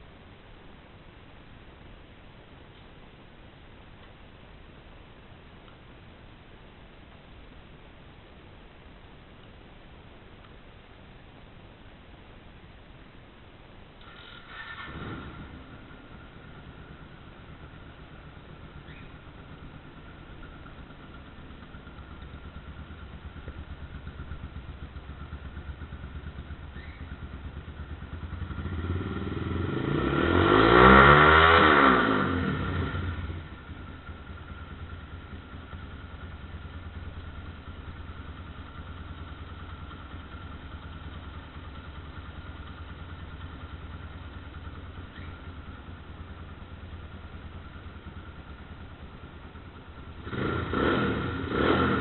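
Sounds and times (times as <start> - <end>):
motorcycle engine idling and revving: 14.0 - 52.0.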